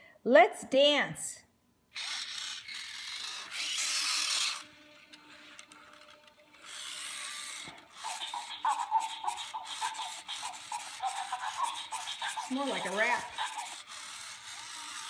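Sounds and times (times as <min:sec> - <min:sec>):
toy motors whirring: 0:01.9 - 0:15.0
rap-like beat from toy speaker: 0:08.0 - 0:13.8.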